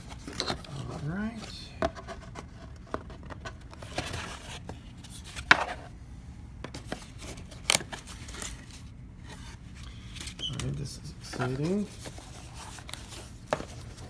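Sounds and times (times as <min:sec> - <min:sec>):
packaging rustling: 0:06.7 - 0:14.0.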